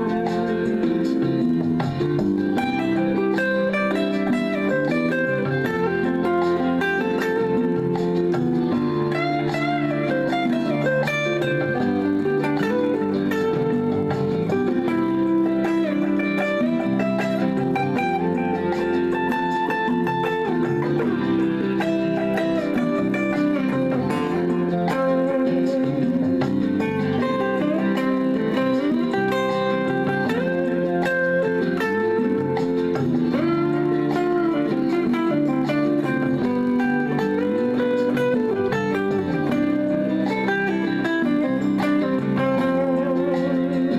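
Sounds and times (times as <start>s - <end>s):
backing track: 0.0s - 43.9s
guitar melody with bending notes: 0.0s - 43.9s.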